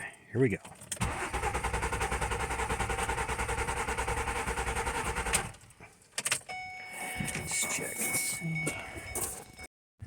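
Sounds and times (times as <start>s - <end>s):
starter motor cranking: 1.0s - 5.6s.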